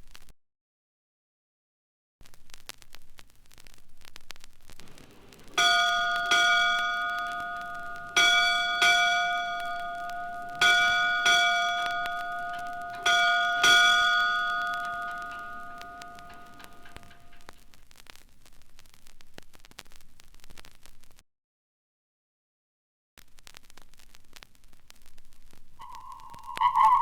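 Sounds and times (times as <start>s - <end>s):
record surface crackle: 0.0s - 0.3s, 2.2s - 21.2s, 23.2s - 27.0s
high-pitched bell ringing: 5.5s - 17.5s, 25.9s - 27.0s.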